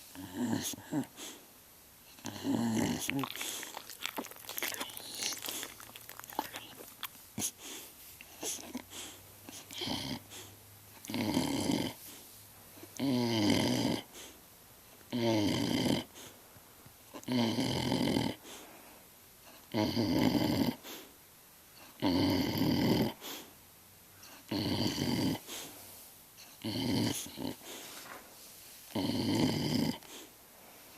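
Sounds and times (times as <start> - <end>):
dog snoring: 0.1 - 1.4, 2.1 - 12.2, 13.0 - 14.4, 15.1 - 16.4, 17.2 - 18.6, 19.5 - 21.1, 21.8 - 23.5, 24.2 - 25.7, 26.5 - 27.9, 28.9 - 30.3.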